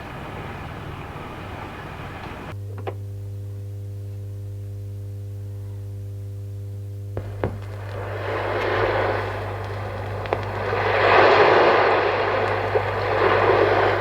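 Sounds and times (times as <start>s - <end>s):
traffic noise: 0.0s - 2.6s, 7.2s - 14.0s
low electrical hum: 0.0s - 14.0s
clicks: 7.2s - 14.0s.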